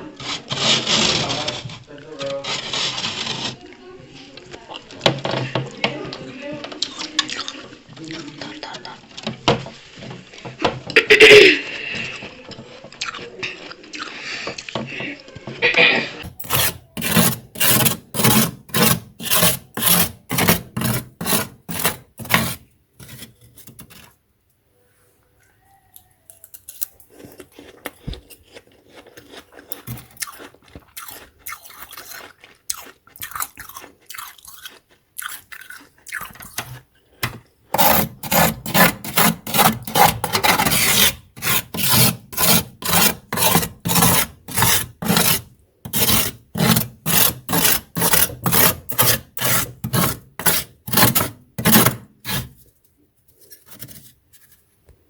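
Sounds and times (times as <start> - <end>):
frost being scraped: 0.0 - 3.7, 16.2 - 24.2, 36.5 - 52.7, 53.4 - 54.6
ice crunching: 16.2 - 24.1, 34.6 - 52.5.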